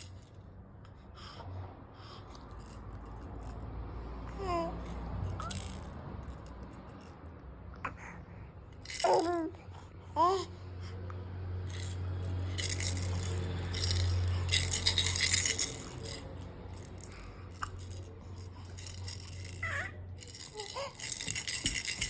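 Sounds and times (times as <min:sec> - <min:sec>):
baby rattle shaking: 0:00.0 - 0:00.5, 0:02.3 - 0:03.7, 0:04.4 - 0:07.3, 0:08.8 - 0:09.5, 0:11.6 - 0:22.0.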